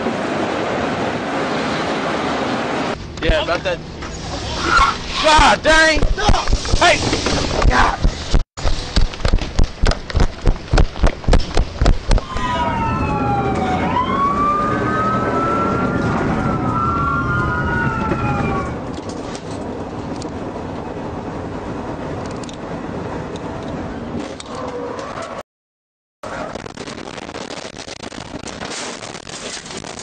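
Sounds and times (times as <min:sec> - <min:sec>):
vehicle and road noise: 0:00.0 - 0:25.4
police sirens: 0:12.2 - 0:18.9.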